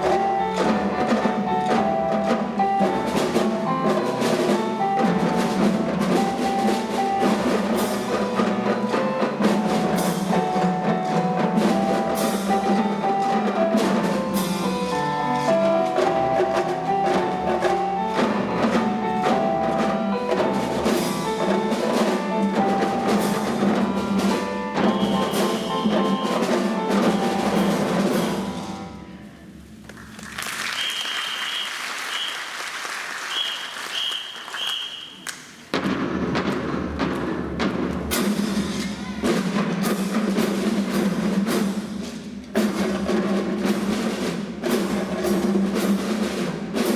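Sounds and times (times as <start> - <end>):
percussion and mallet music: 0.0 - 29.7, 33.2 - 46.9
audience applause: 29.9 - 35.3.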